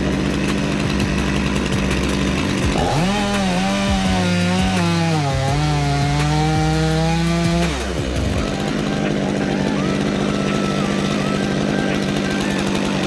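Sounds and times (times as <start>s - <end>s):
chainsaw cutting wood: 0.0s - 8.4s.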